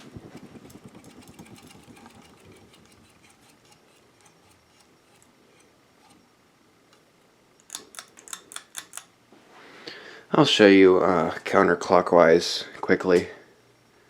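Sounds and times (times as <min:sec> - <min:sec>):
fan ticking: 0:00.0 - 0:05.3, 0:07.5 - 0:09.2
ceiling fan hum: 0:00.0 - 0:14.0.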